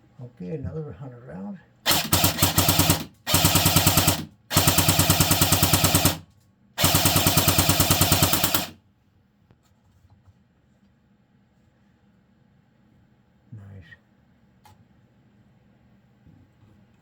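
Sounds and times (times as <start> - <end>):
bb gun full auto bursts: 1.9 - 8.8.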